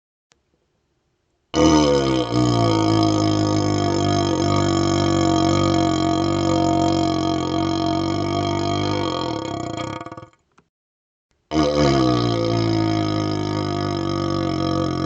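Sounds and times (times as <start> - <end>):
burp through a hollow tube: 1.6 - 10.5, 11.5 - 15.0.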